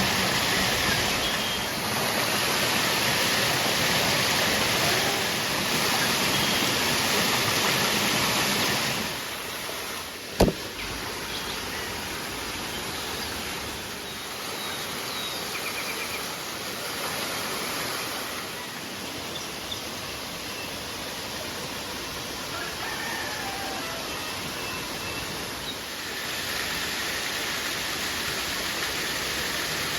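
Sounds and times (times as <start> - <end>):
river water flowing: 0.0 - 22.8
sharp knock: 10.4 - 10.7.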